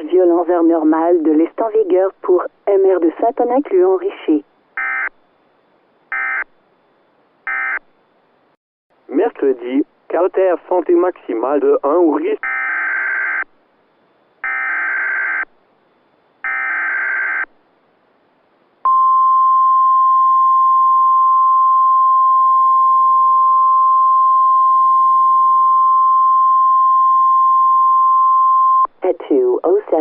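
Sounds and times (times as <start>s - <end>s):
steady warning alarm tone: 4.8s - 5.1s, 6.1s - 6.5s, 7.5s - 7.9s, 12.4s - 13.5s, 14.4s - 15.5s, 16.4s - 17.5s.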